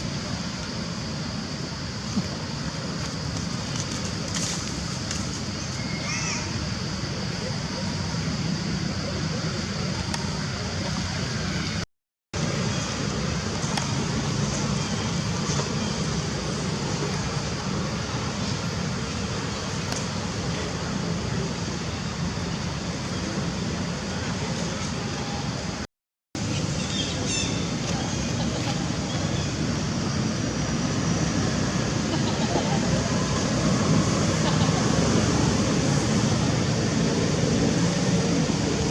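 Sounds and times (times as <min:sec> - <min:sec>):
steady rushing background noise: 0:12.4 - 0:38.9.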